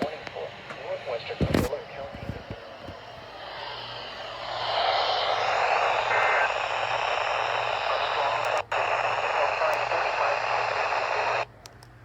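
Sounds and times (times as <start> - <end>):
radio static hiss: 0.0 - 11.5
steady low hum: 0.0 - 12.0.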